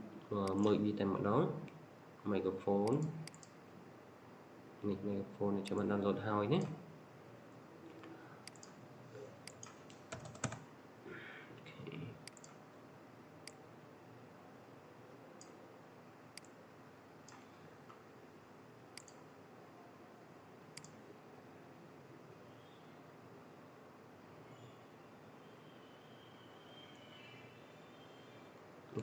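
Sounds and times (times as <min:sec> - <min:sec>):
faint room hiss: 0:00.0 - 0:29.0
mouse and keyboard clicks: 0:02.9 - 0:03.5, 0:08.4 - 0:08.8.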